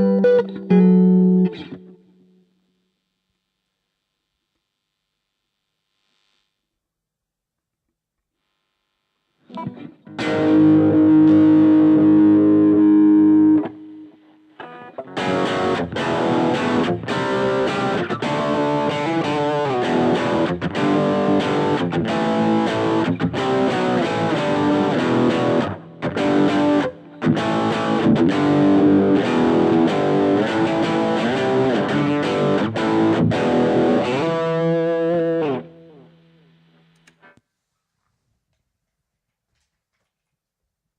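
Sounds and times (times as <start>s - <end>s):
distorted electric guitar: 0.0s - 3.3s, 9.3s - 37.4s.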